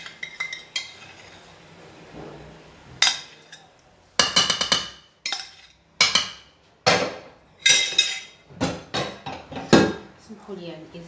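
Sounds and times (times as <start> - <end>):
utensil clinking against dishware: 3.0 - 10.0.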